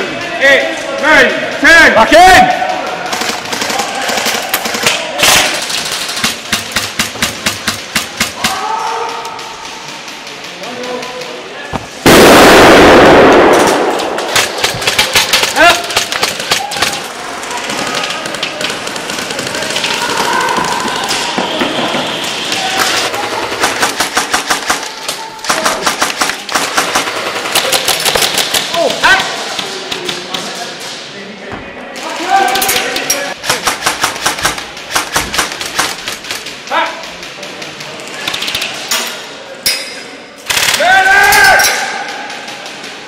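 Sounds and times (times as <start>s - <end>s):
airsoft rifle shots: 11.8s - 30.1s, 33.3s - 37.3s.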